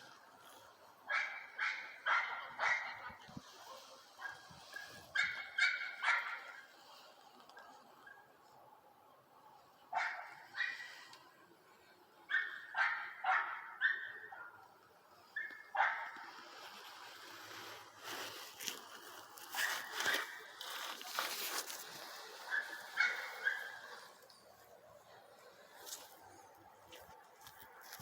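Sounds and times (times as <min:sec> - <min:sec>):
dog barking: 0:01.1 - 0:06.7, 0:09.9 - 0:11.1, 0:12.2 - 0:14.7, 0:15.3 - 0:16.4, 0:22.4 - 0:24.2.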